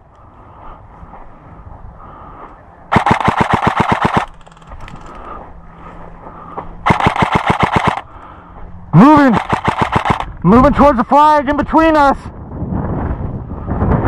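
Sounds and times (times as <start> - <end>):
airsoft gun full-auto bursts: 2.9 - 4.6, 6.8 - 8.1, 9.0 - 10.3.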